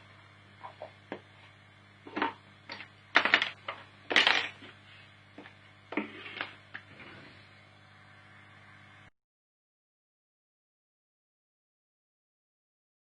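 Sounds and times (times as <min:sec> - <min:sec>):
steady low hum: 0:00.0 - 0:09.1.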